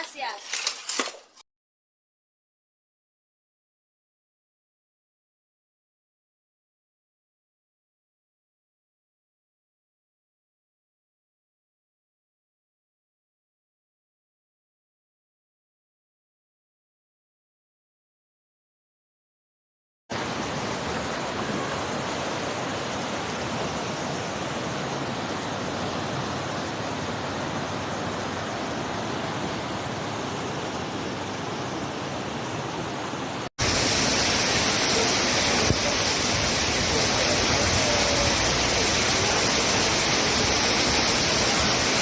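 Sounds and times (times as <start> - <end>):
rushing floodwater: 20.1 - 42.0.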